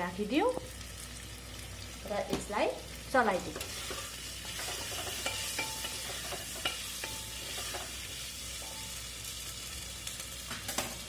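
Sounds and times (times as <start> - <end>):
food sizzling in oil: 0.0 - 11.0
spoon scraping a pot: 3.6 - 8.1.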